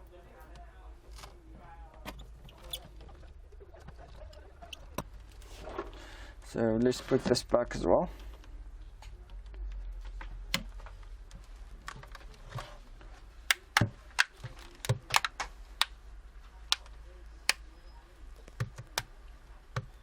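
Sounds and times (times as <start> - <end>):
plastic parts clicking together: 13.5 - 16.0.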